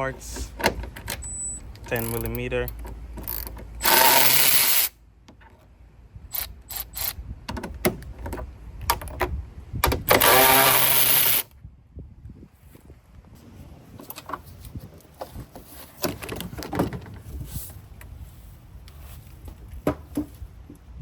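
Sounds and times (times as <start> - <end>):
power tool whirring: 3.2 - 5.0, 10.1 - 11.5.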